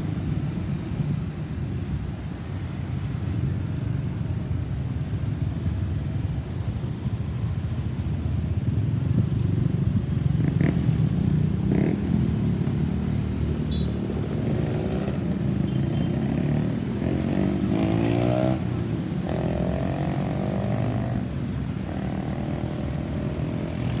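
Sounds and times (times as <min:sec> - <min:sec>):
traffic engines rumbling: 0:00.0 - 0:24.0.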